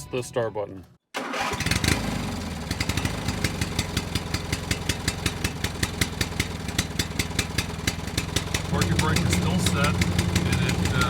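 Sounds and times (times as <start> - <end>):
small engine idling with ticks: 2.4 - 11.0.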